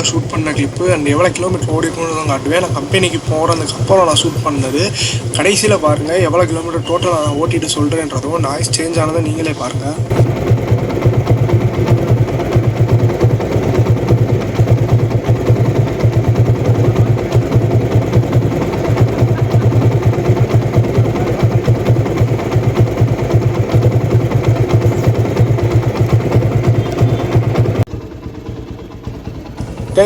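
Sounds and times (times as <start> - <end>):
motorcycle engine idling: 0.0 - 30.0.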